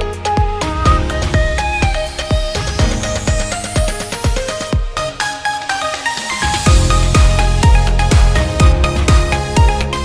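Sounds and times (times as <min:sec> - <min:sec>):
kick drum beat: 0:00.0 - 0:05.2, 0:06.7 - 0:09.8
stepping synth notes: 0:00.3 - 0:05.8
electronic dance music: 0:00.3 - 0:07.8
rising synth sweep: 0:00.6 - 0:03.7.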